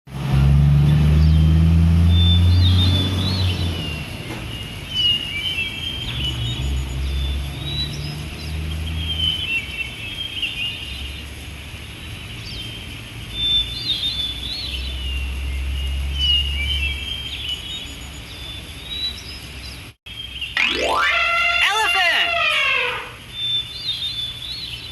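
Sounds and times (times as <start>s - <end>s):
bird singing chirpy phrases: 13.5s - 24.9s.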